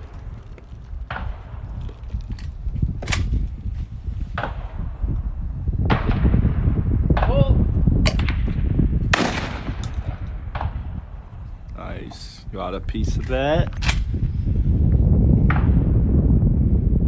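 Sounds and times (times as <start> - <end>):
steady low rumble: 0.0 - 17.0
shotgun shots: 9.1 - 10.8.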